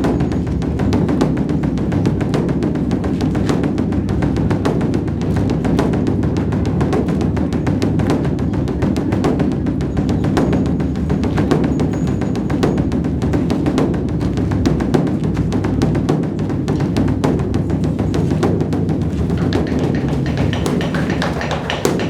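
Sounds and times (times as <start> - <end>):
large drum beaten rapidly: 13.0 - 22.0.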